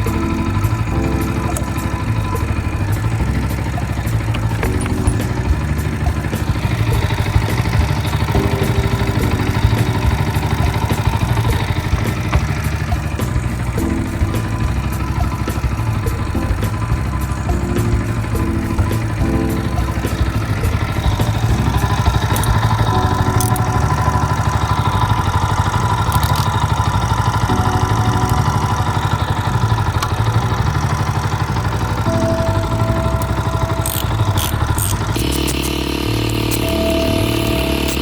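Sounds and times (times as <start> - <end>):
motorcycle engine idling: 0.0 - 38.0.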